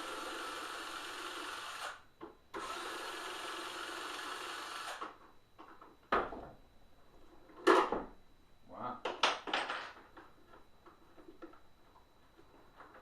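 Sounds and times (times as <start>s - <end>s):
power drill running: 0.0s - 2.0s, 2.6s - 5.1s.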